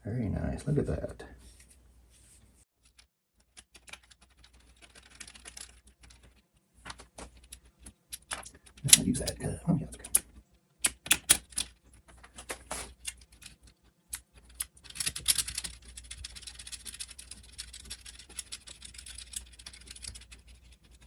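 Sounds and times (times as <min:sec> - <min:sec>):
metal parts clicking: 0:07.4 - 0:21.0.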